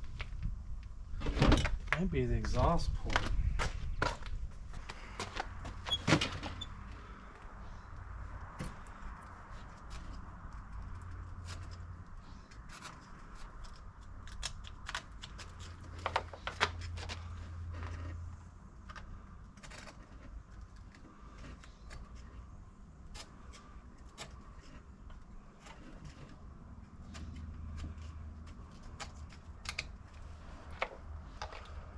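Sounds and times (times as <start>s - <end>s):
tools clicking and scraping parts: 18.8s - 31.9s.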